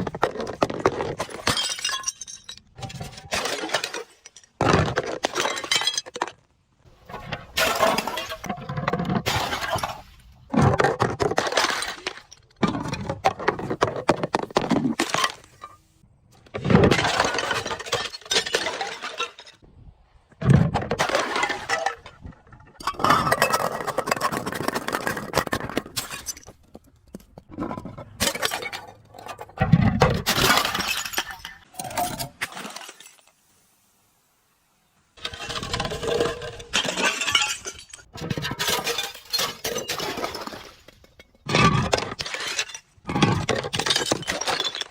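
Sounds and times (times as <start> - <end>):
glass bottles breaking: 1.1 - 6.4, 7.6 - 10.0, 16.7 - 19.6, 29.6 - 33.2, 35.2 - 44.9.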